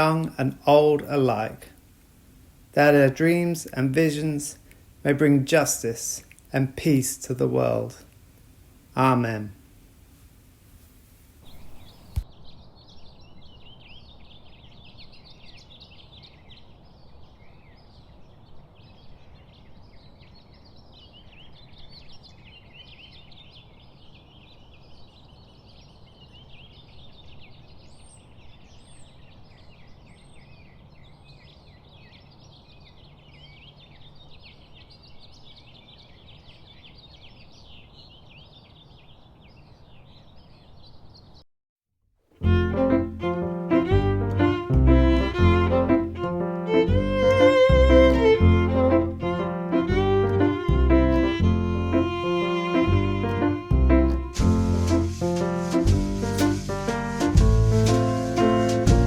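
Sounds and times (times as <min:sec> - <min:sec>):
high repeated bird notes: 0:42.4 - 0:59.0.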